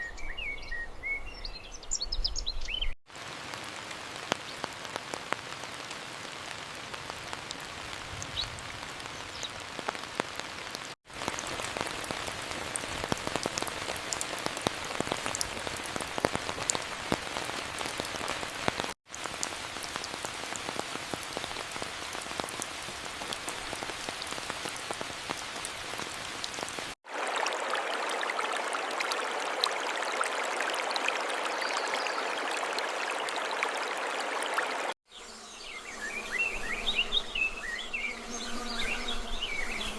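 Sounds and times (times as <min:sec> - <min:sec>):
steady rain falling: 0:03.1 - 0:35.0.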